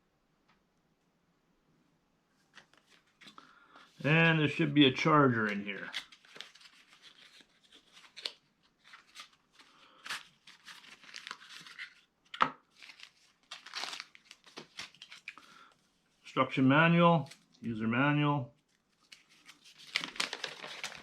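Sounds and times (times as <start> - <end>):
cardboard packaging rustling: 2.5 - 15.4, 18.6 - 21.0.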